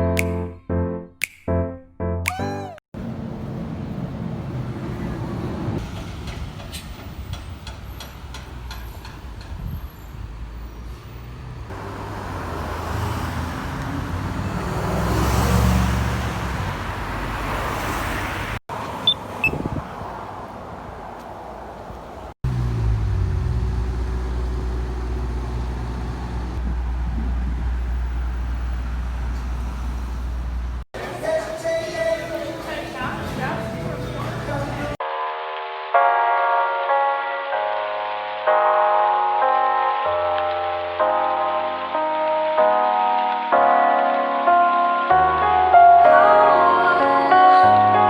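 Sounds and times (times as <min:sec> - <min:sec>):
vehicle passing: 0:10.2 - 0:35.0
low engine hum: 0:22.4 - 0:30.8.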